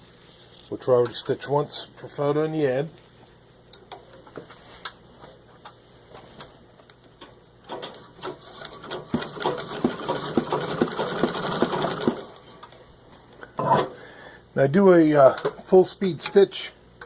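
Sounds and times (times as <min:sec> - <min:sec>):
treadle sewing machine clatter: 0:07.7 - 0:12.4.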